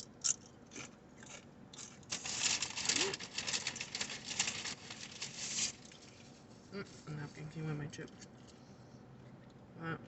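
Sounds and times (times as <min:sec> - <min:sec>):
paper wrapper crinkling: 0:01.8 - 0:06.5.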